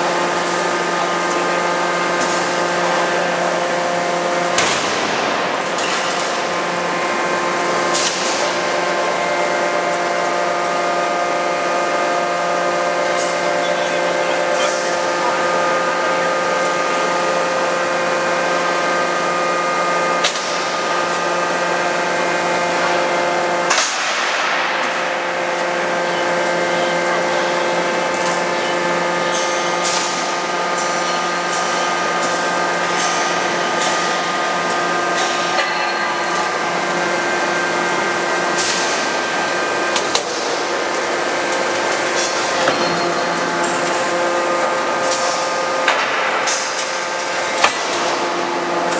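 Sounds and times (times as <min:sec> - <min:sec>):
hydraulic drive humming: 0:37.4 - 0:48.9.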